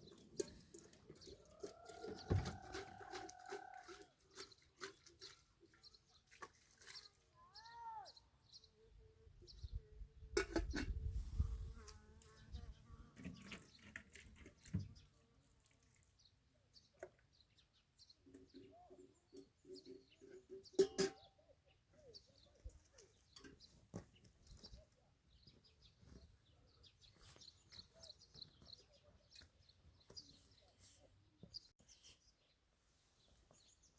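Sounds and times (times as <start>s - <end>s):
small birds chirping: 11.7s - 33.9s.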